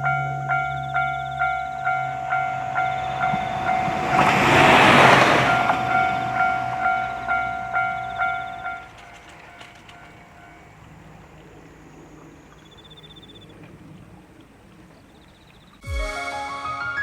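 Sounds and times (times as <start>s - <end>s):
faint high trill: 0.0s - 9.0s
railway crossing bell ringing: 0.0s - 11.1s
low steady hum: 0.0s - 15.4s.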